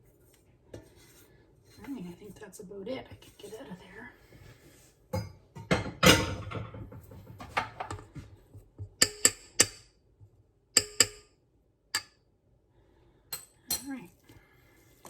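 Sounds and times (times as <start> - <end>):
spatula scraping a pot: 0.0 - 5.0
sharp ringing knocks: 10.8 - 11.3.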